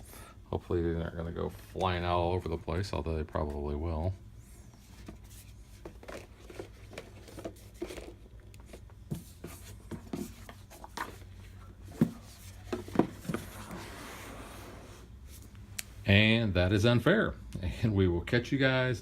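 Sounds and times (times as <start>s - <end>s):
cardboard rustling: 4.8s - 15.0s.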